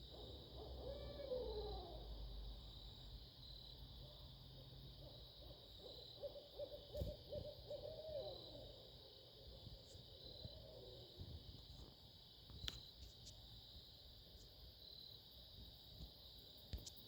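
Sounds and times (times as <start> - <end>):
owl hooting: 0.2 - 2.2, 5.8 - 9.9.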